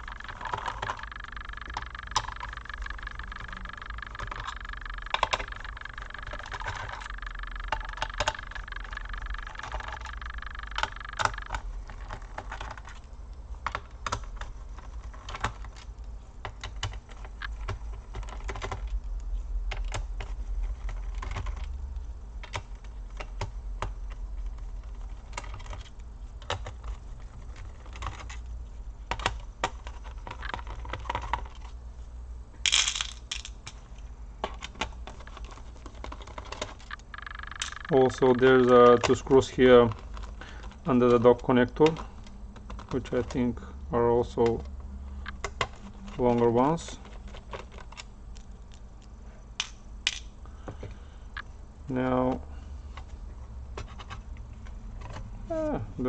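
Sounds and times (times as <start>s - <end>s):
screwdriver and screws clicking: 0.0s - 13.0s
steady high whine: 0.0s - 16.3s, 31.6s - 53.4s.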